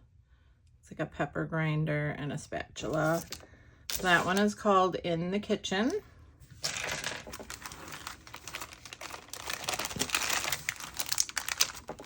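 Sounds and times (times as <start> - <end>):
plastic packaging crinkling: 2.9 - 4.5, 6.6 - 12.0.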